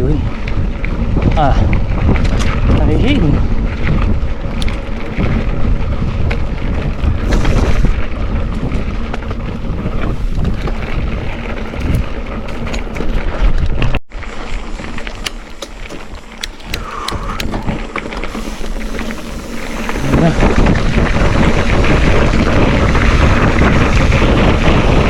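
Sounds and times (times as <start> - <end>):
wind buffeting the microphone: 0.0 - 14.0, 14.8 - 25.0
small clicks: 15.0 - 20.1.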